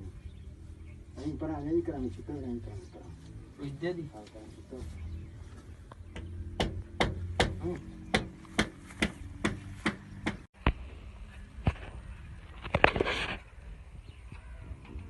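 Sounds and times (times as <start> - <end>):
hammer blows: 6.1 - 10.5.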